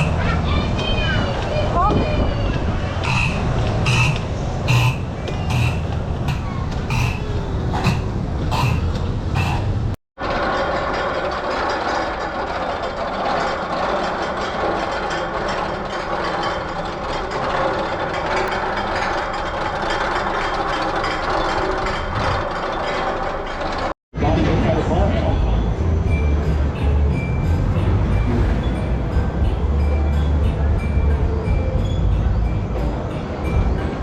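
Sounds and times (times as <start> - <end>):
ride machinery clicking: 0.0 - 24.0
mechanical clatter and rumble: 0.0 - 34.0.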